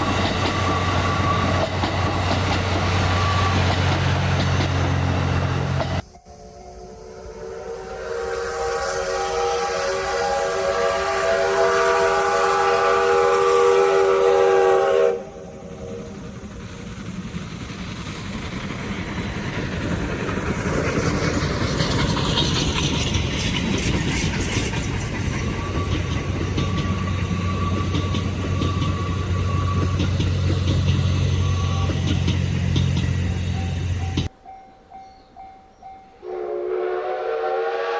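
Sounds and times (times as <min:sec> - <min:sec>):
train wheels clattering on rails: 0:00.0 - 0:06.0, 0:15.2 - 0:36.2
steam whistle chord: 0:05.0 - 0:15.9, 0:36.2 - 0:37.9.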